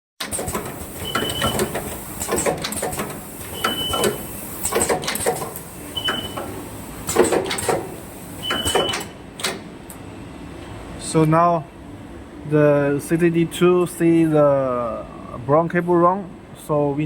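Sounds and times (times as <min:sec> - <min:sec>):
mechanical clacks: 0:00.2 - 0:09.7
short high beep: 0:01.0 - 0:01.6, 0:03.6 - 0:04.2, 0:06.0 - 0:06.4, 0:08.4 - 0:09.0.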